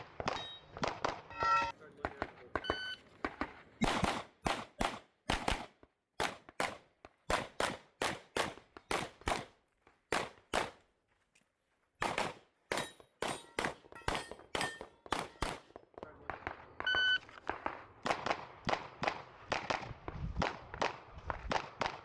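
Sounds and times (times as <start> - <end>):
pistol shots: 2.1 - 10.8, 12.0 - 22.0.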